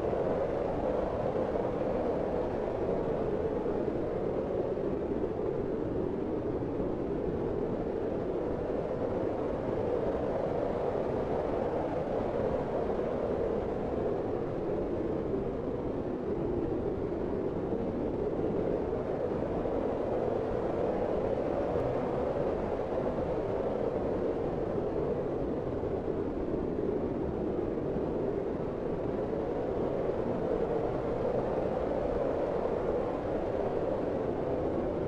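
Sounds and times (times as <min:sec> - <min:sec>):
steady rush of wind: 0:00.0 - 0:35.0.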